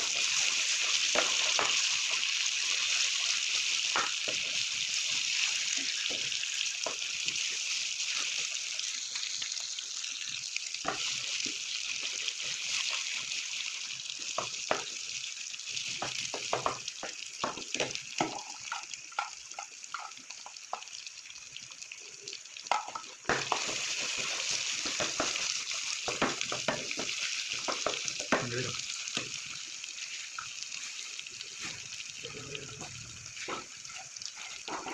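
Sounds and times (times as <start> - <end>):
greens sizzling in a hot pan: 0.0 - 34.9
spatula clicking and scraping: 18.3 - 20.9.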